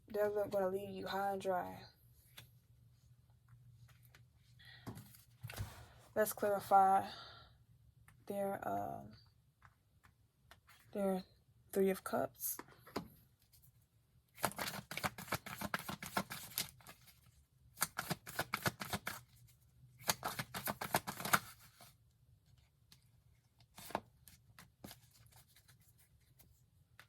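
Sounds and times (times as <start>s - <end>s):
cards shuffling: 14.4s - 17.2s, 17.8s - 19.4s, 20.0s - 21.9s, 23.6s - 26.5s.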